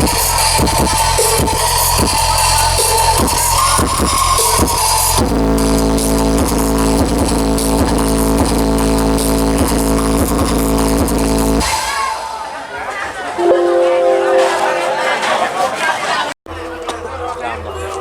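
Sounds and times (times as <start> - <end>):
electronic dance music with heavy bass: 0.6 - 11.7.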